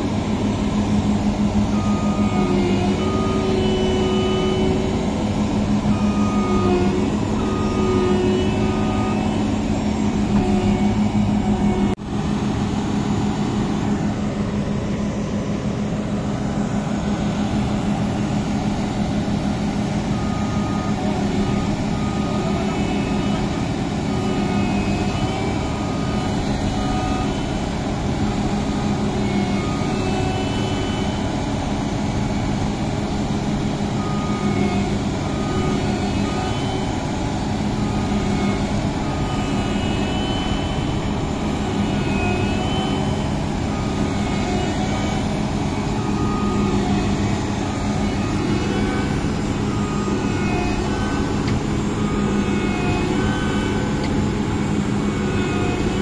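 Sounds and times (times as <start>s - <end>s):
diesel engine running: 0.0s - 56.0s
short high-pitched tones: 1.6s - 12.0s, 34.0s - 56.0s.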